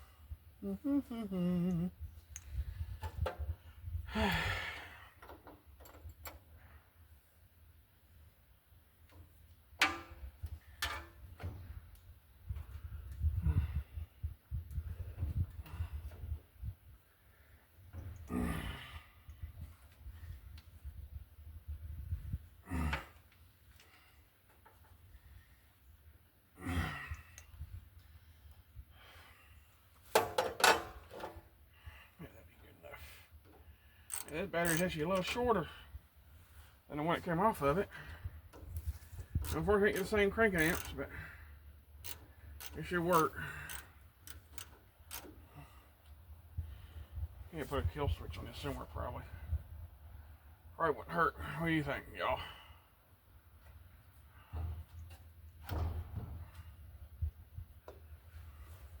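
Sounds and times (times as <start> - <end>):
drawn-out vocal sound: 0.6 - 2.1
person sighing heavily: 0.6 - 2.1, 4.0 - 5.2, 13.4 - 14.0, 18.2 - 19.4, 22.6 - 23.2, 26.6 - 27.5
sharp clicks and knocks: 9.0 - 12.7, 30.1 - 31.4, 38.5 - 41.0.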